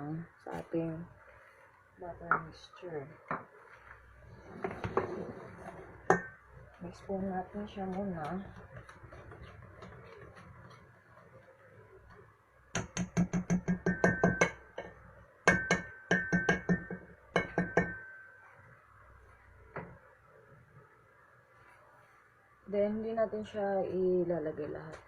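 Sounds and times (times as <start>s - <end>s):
utensil clinking glass bowl: 13.0s - 18.4s.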